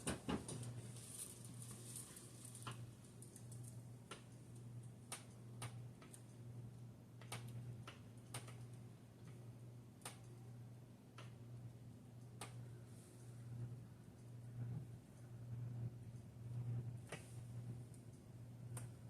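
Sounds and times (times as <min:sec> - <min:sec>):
ceiling fan motor humming: 0:00.0 - 0:19.0
light ticks: 0:11.2 - 0:11.4.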